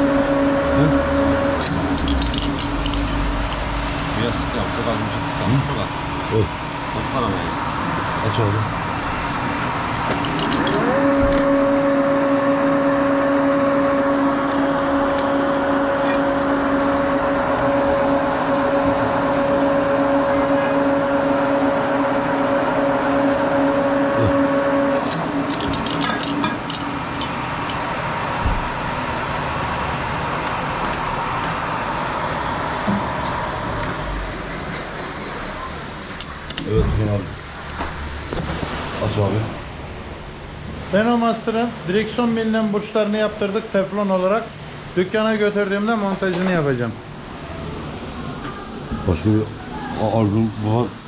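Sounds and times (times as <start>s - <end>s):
electric motor whining and humming: 0.0s - 35.8s.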